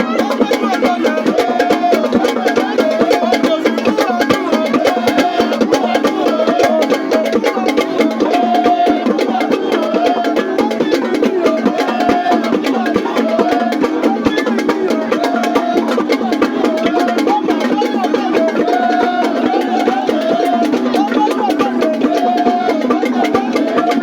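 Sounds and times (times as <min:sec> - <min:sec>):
music with clicking percussion beat: 0:00.0 - 0:24.0.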